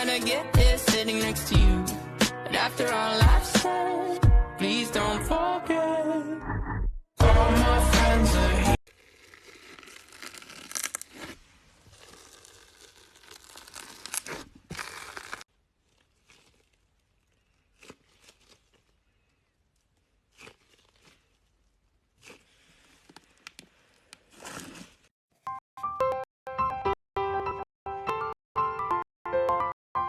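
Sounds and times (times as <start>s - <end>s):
slime crackling and popping: 8.9s - 25.0s.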